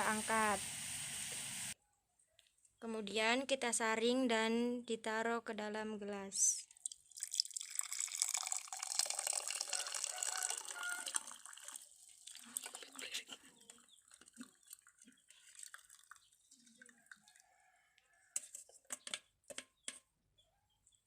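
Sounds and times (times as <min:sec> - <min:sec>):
liquid pouring into a glass: 0:06.8 - 0:13.0, 0:14.0 - 0:17.5.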